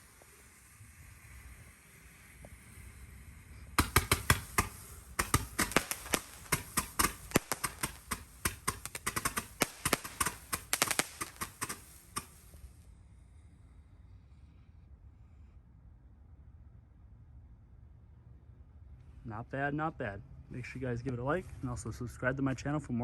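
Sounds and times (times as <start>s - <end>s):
firework cracks and pops: 0.0s - 12.8s
firework hiss: 0.0s - 13.3s.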